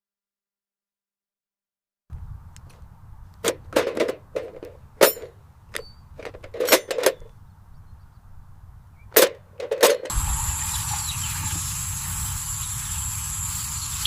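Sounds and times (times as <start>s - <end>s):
low steady hum: 10.1s - 14.0s.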